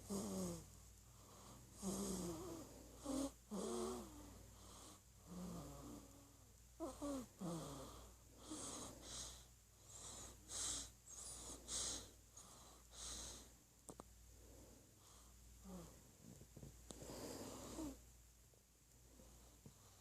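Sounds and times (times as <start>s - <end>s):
baby snoring wheezy breaths: 1.2s - 6.1s, 6.8s - 13.6s.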